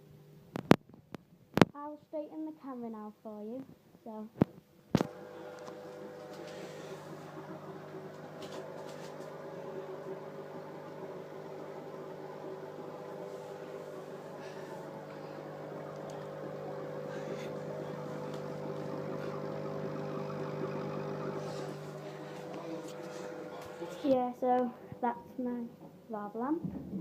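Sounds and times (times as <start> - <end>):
air pump humming: 5.0 - 25.0
water bubbling: 9.4 - 23.5.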